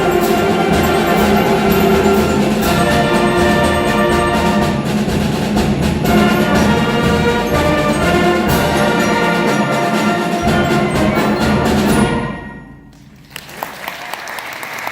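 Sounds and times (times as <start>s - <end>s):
concert band playing: 0.0s - 13.0s
audience applause: 13.0s - 14.9s.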